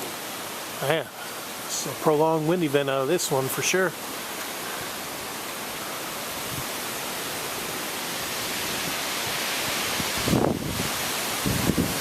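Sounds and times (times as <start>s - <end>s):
low wind buffet: 4.8s - 12.0s
strong storm wind rushing: 6.3s - 12.0s.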